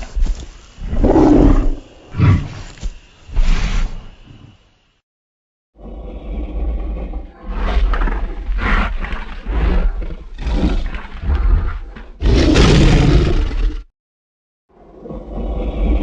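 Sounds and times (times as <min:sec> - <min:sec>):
monster growling roars: 0:00.9 - 0:02.5.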